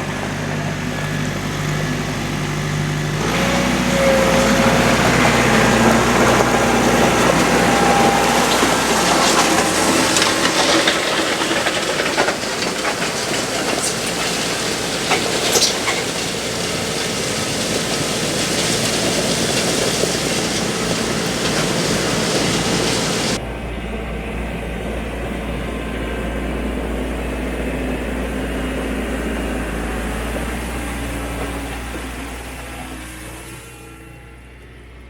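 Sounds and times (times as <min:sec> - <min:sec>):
loud grinding rattle: 0:00.0 - 0:23.4
tractor engine hum: 0:00.0 - 0:35.0.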